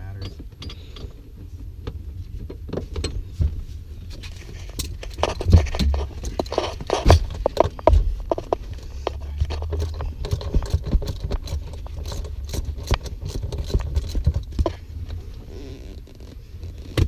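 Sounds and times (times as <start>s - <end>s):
hand tools clicking and knocking: 0.0s - 1.2s, 4.6s - 14.8s
steady low rumble: 0.0s - 17.0s.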